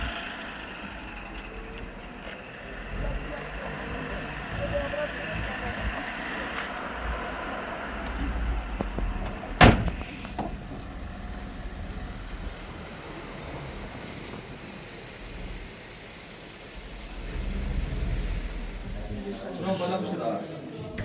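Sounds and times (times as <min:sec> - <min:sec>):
low background rumble: 0:08.2 - 0:19.6
car door slamming: 0:09.6 - 0:11.0.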